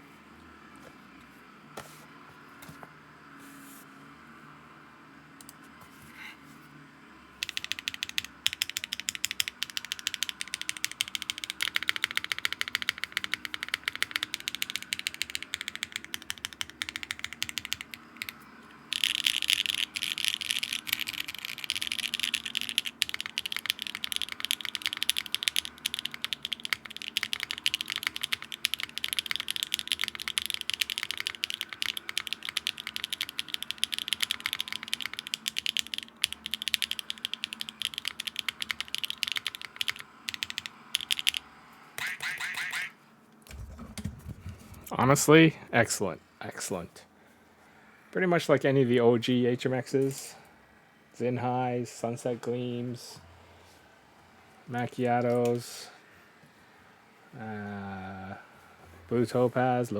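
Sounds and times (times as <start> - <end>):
fast typing on mechanical keyboard: 7.4 - 41.5.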